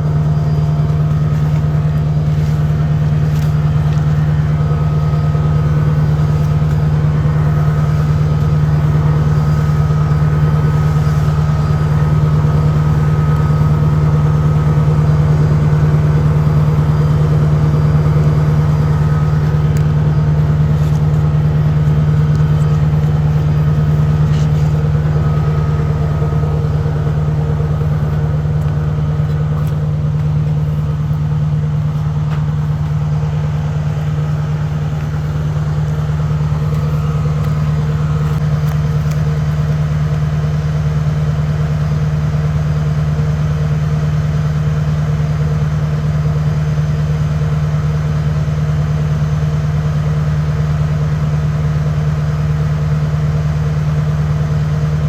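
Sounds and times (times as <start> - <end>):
engine running steadily: 0.0 - 55.0.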